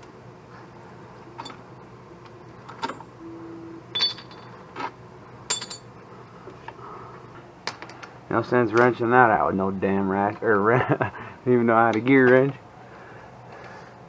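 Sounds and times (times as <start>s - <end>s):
steady low hum: 0.0s - 14.0s
metal tools clinking: 3.9s - 4.6s, 5.5s - 5.9s.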